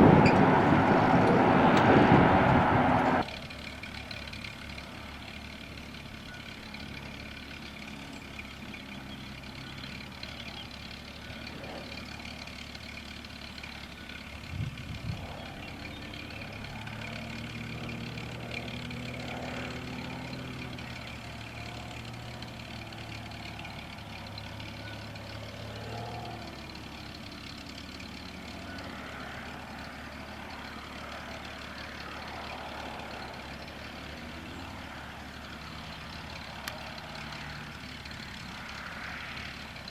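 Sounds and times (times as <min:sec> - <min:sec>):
distant aircraft engine droning: 0:00.0 - 0:39.9
steady outdoor hum: 0:00.0 - 0:39.9.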